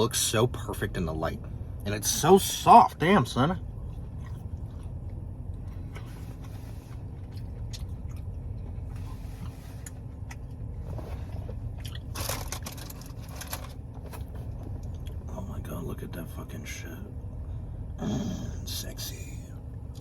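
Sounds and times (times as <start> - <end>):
low rumble: 0.0 - 20.0
chewing fried cheese bite: 3.8 - 10.6, 11.6 - 13.6.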